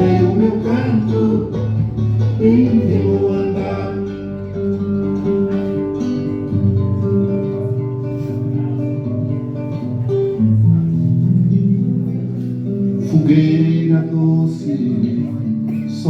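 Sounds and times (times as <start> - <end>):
bass line: 0.0 - 16.0
plucked guitar: 0.0 - 16.0.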